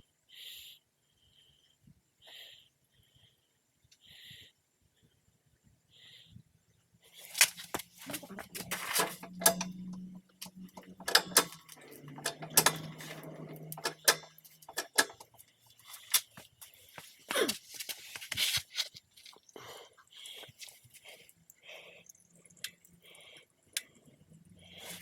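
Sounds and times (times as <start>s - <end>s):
low steady hum: 4.9s - 17.9s
metal hand tools clinking: 7.3s - 16.3s.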